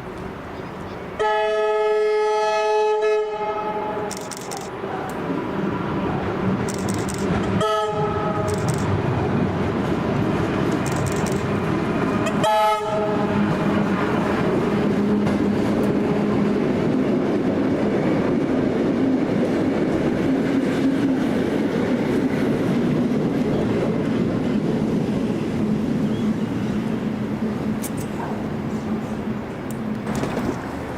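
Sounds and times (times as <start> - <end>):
train wheel and rail noise: 0.0 - 30.9
train horn blast: 1.2 - 4.1, 7.6 - 8.5, 12.2 - 13.6.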